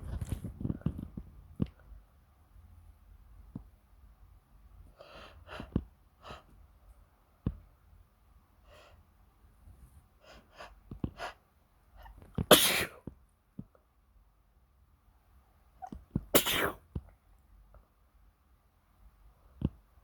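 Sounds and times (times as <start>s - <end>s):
person sneezing: 12.4s - 13.0s, 16.3s - 16.8s.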